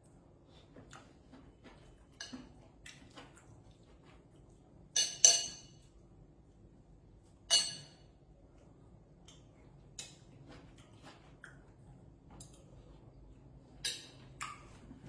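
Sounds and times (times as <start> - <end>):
utensil clinking on cookware: 5.0 - 5.8, 7.5 - 8.0.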